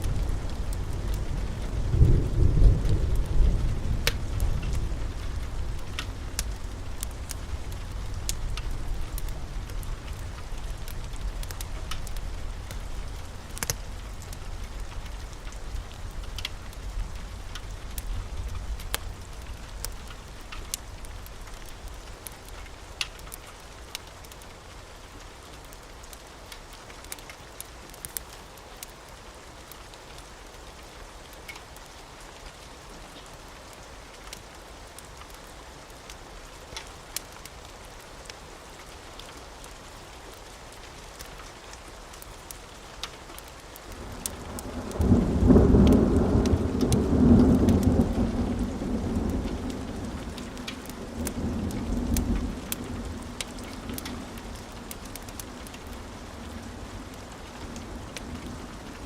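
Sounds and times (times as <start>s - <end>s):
steady rain: 0.0s - 59.0s
wood fire crackling: 0.0s - 59.0s
thunder rolling: 0.1s - 14.8s, 44.0s - 57.1s.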